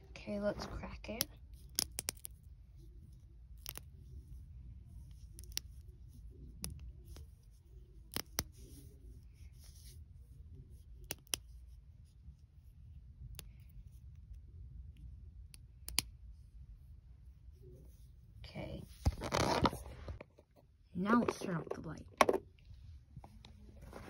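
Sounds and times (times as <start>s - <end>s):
glow stick cracking: 1.0s - 2.4s, 14.9s - 16.2s.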